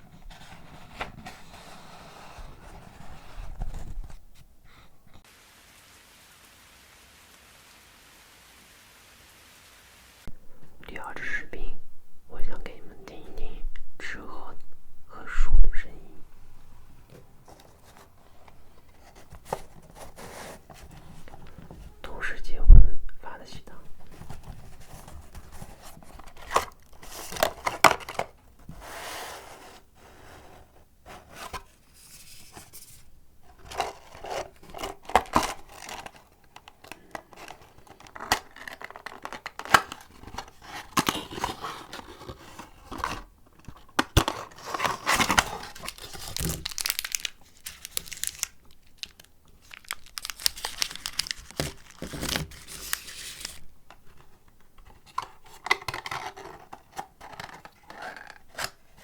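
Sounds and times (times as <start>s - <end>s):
paper crinkling and tearing: 33.5s - 53.7s.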